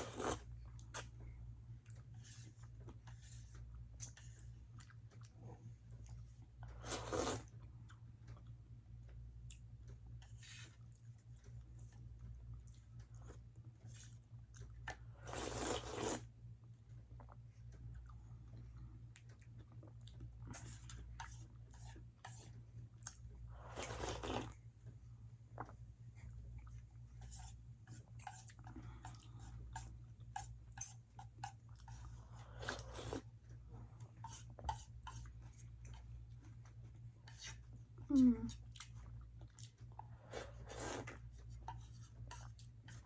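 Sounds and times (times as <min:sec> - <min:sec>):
person chewing noodles: 0:00.0 - 0:16.3, 0:17.0 - 0:24.6, 0:25.5 - 0:43.0
low steady hum: 0:00.0 - 0:43.0
loud slurping mouth sounds: 0:15.3 - 0:16.3, 0:23.7 - 0:24.6.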